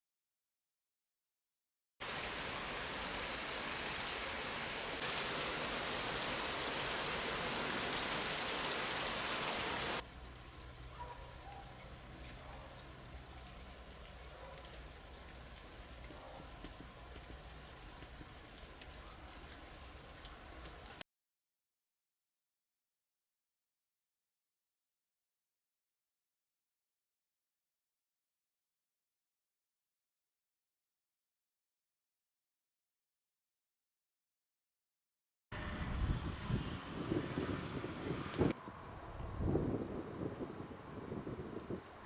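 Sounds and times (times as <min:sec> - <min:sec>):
wind on microphone: 0:35.6 - 0:42.0.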